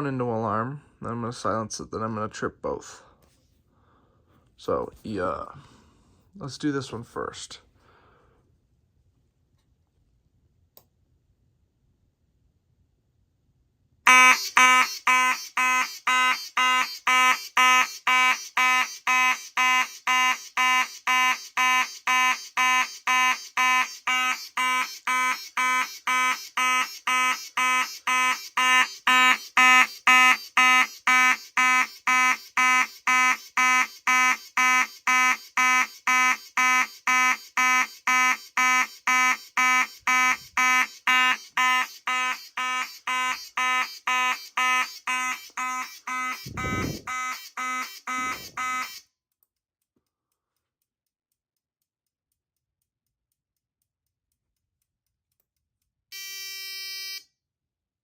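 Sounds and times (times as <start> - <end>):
fire alarm horn pulsing: 14.1 - 49.1, 56.1 - 57.3.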